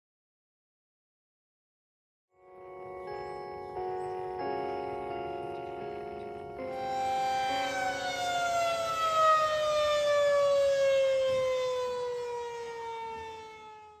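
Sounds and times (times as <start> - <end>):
warning siren winding down: 6.7 - 14.0.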